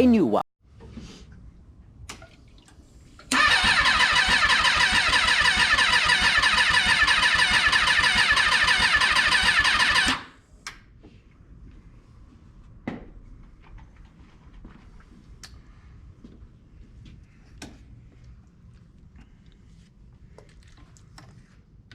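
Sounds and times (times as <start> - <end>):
engine cranking on electric starter: 3.3 - 10.4.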